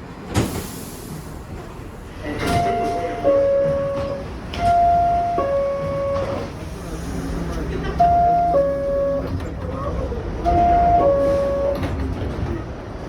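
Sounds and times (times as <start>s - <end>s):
train rumble: 0.0s - 13.0s
subway door chime: 2.2s - 12.6s.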